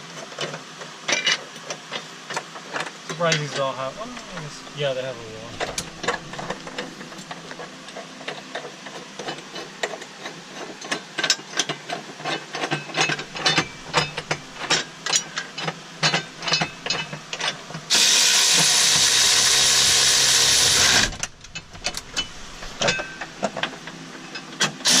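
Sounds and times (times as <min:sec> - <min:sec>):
faint steady hum: 0:02.3 - 0:08.6, 0:12.7 - 0:25.0
hand tools clattering: 0:02.3 - 0:19.8, 0:20.4 - 0:25.0
loud rushing hiss: 0:17.9 - 0:22.9.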